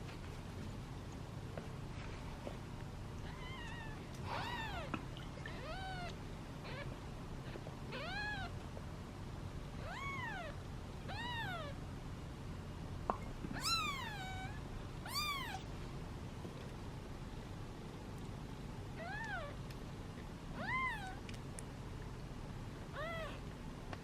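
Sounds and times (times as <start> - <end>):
kittens meowing: 3.2 - 7.0, 7.9 - 8.5, 9.8 - 11.8, 13.6 - 15.6, 20.6 - 21.2, 23.0 - 23.4.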